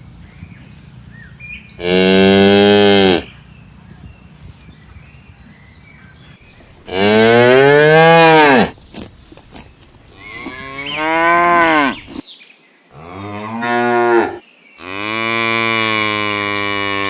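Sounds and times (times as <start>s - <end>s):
cow mooing: 1.8s - 3.3s, 6.9s - 8.7s, 10.2s - 12.1s, 13.0s - 17.0s.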